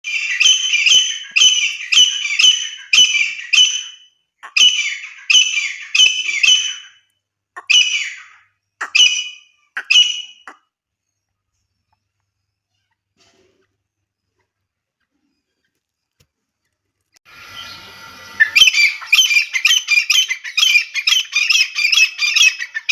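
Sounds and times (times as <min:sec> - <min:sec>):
bird shrill calls: 0:00.1 - 0:07.0, 0:07.6 - 0:10.6, 0:17.5 - 0:22.9.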